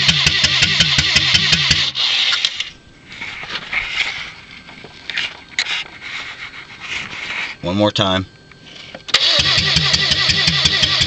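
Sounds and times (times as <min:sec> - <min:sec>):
car engine cranking: 0:00.0 - 0:02.7, 0:09.1 - 0:11.0.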